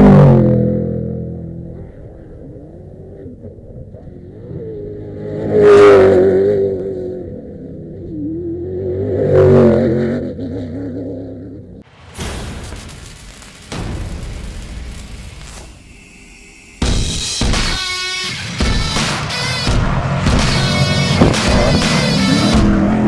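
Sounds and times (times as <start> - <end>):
race vehicle engines revving: 0.0 - 11.8, 18.5 - 23.0.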